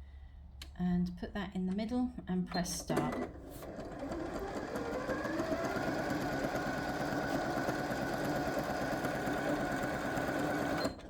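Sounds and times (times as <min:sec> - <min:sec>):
sewing machine stitching: 0:02.8 - 0:11.0.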